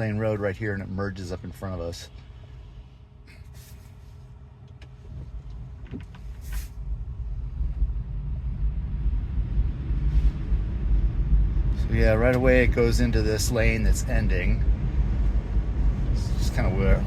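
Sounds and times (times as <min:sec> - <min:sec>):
tyre and road rumble: 0:04.8 - 0:17.0.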